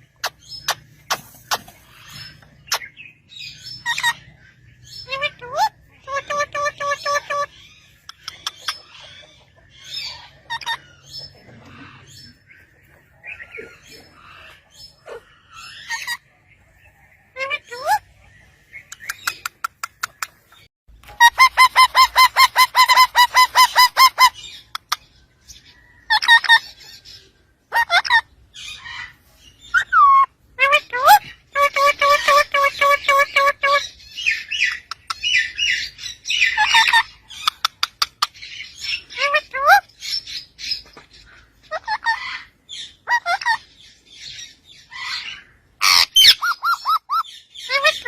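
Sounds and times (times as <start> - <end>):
parrot squawks and chirps: 0.0 - 12.4, 13.3 - 16.4, 17.2 - 25.2, 26.0 - 48.0
parrot calling shrilly: 21.1 - 24.7, 27.7 - 40.0, 41.7 - 43.6, 44.9 - 48.0.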